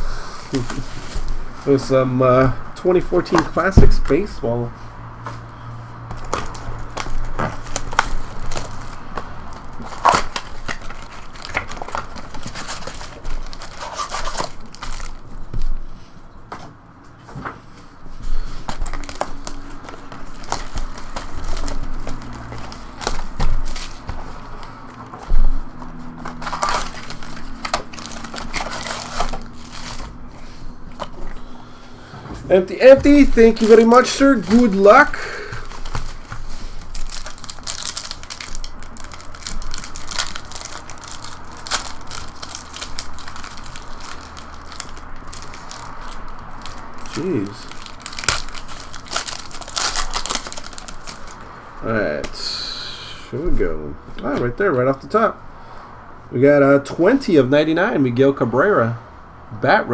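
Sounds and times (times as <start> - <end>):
plastic wrapping crinkling and tearing: 0.5 - 2.6, 6.0 - 16.1, 18.1 - 31.6, 32.6 - 52.3.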